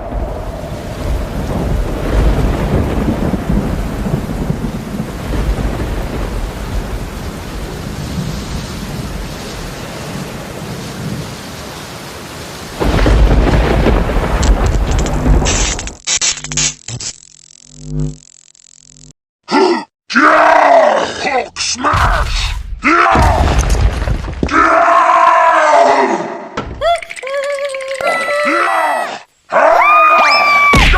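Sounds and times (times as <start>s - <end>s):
low rumbling thunder: 0.0s - 11.4s, 12.7s - 15.5s
rain: 0.0s - 16.0s.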